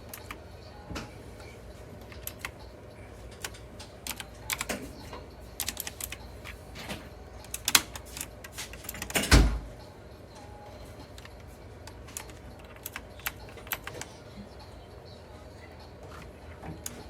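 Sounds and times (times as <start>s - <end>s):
clicky mechanical keyboard typing: 2.1s - 2.6s, 3.4s - 4.9s, 5.6s - 6.2s, 7.4s - 9.6s, 12.0s - 14.1s.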